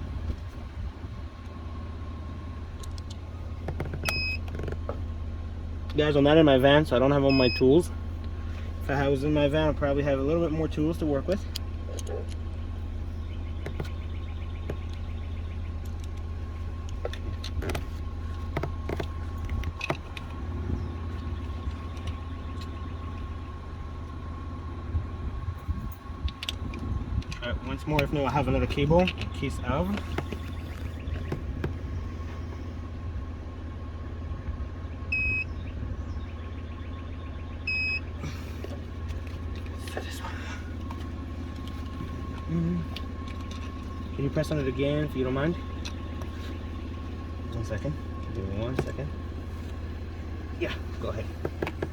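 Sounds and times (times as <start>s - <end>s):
low mechanical rumble: 0.0s - 51.9s.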